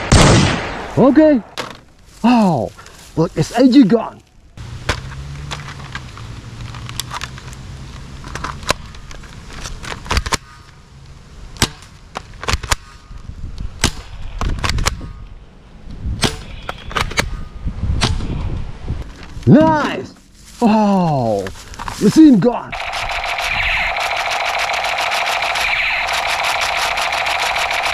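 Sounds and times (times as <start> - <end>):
low hum: 22.7 - 27.9
toy gun clicks and snaps: 22.8 - 27.9.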